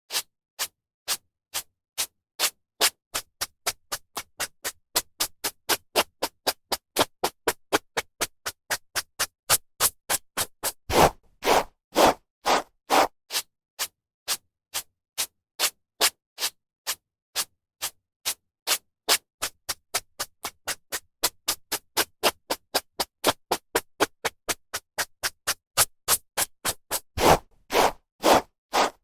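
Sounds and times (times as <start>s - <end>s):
brush swishing through hair: 27.2s - 29.0s.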